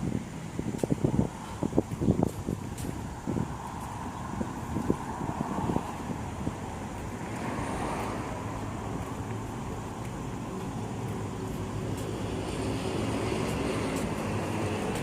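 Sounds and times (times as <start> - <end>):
city traffic rumble: 0.0 - 15.0.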